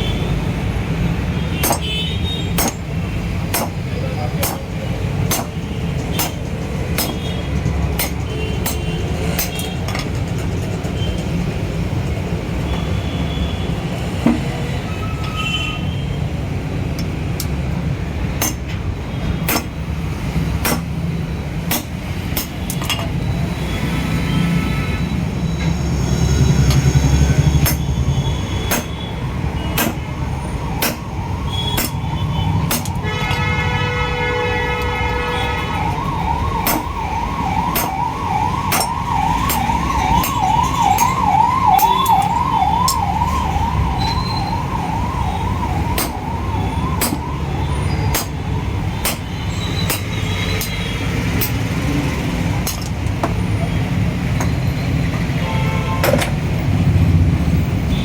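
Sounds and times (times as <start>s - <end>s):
low rumble of traffic: 0.0s - 58.0s
sharp metal knocks: 1.6s - 11.4s, 14.2s - 14.6s, 18.3s - 19.9s, 20.6s - 23.2s, 27.5s - 28.0s, 28.6s - 30.1s, 30.7s - 33.4s, 36.5s - 43.2s, 45.8s - 47.3s, 48.1s - 51.7s, 52.6s - 53.4s, 56.0s - 56.4s
wailing siren: 26.2s - 33.4s, 34.9s - 49.0s.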